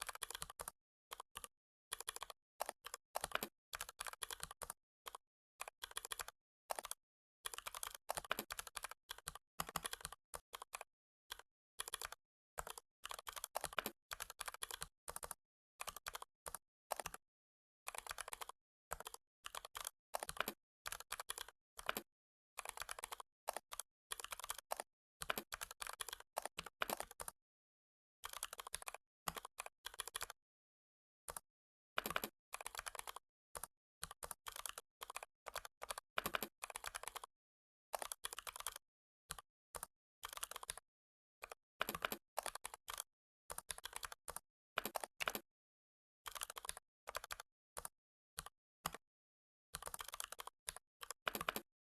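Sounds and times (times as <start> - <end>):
keyboard typing: 5.9 - 10.8, 17.9 - 22.0, 22.6 - 27.4, 32.0 - 33.1, 38.0 - 38.5, 40.3 - 40.8, 46.4 - 46.8.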